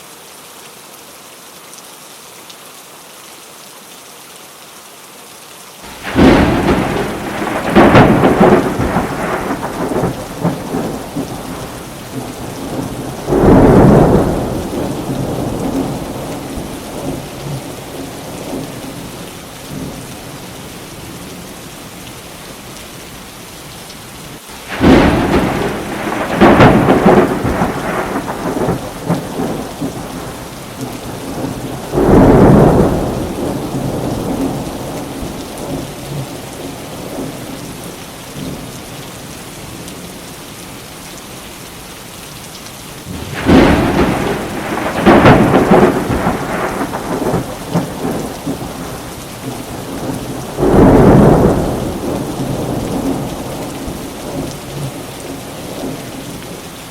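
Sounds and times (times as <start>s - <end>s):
steady rain: 0.0s - 56.9s
thunder cracks and rumbles: 5.9s - 19.0s, 24.6s - 36.3s, 43.1s - 55.0s.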